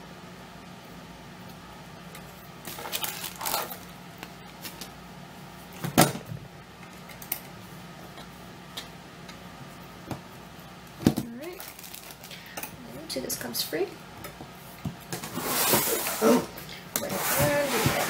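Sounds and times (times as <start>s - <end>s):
scraping and rustling: 15.2s - 18.0s.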